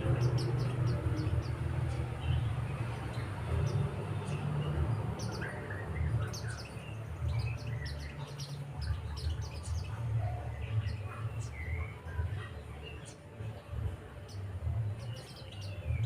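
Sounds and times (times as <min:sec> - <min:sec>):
birds chirping and twittering: 0:00.0 - 0:16.0.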